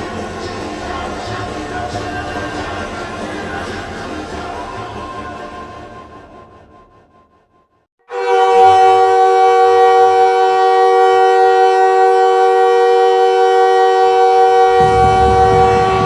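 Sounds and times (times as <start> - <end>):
goal horn blast: 8.0 - 16.0.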